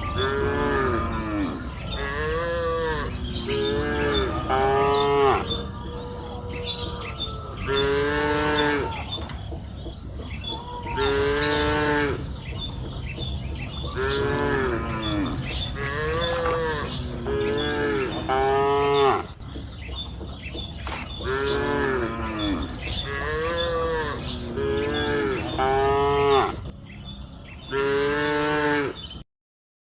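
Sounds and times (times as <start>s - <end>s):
cattle mooing: 0.0s - 5.8s, 6.6s - 9.0s, 10.9s - 12.3s, 14.0s - 19.3s, 21.2s - 26.6s, 27.7s - 29.1s.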